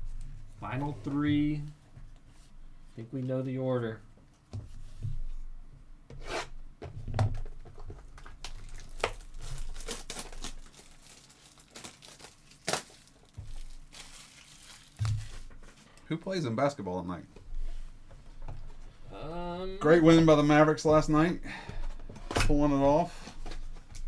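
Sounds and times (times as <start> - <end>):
foil wrappers tearing and crinkling: 7.8 - 15.9.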